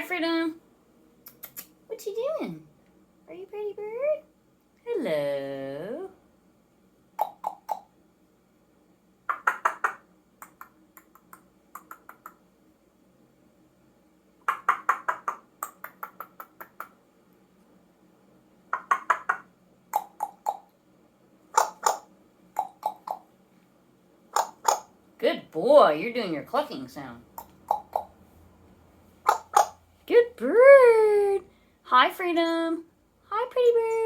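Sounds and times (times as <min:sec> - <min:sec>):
parrot clucking clicks: 0:01.3 - 0:01.8, 0:07.2 - 0:07.9, 0:09.3 - 0:12.4, 0:14.4 - 0:17.0, 0:18.7 - 0:20.8, 0:21.5 - 0:23.3, 0:24.3 - 0:24.9, 0:27.3 - 0:28.2, 0:29.2 - 0:29.8.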